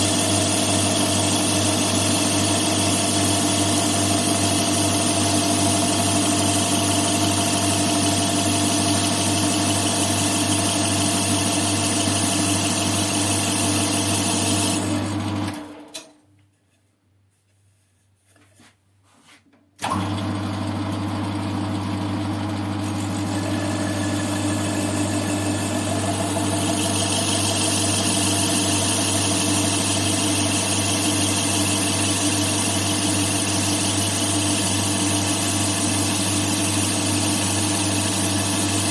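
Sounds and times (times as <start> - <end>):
metal lathe motor hum: 0.0 - 15.6, 19.8 - 38.9
lathe cutting hiss: 22.9 - 38.9.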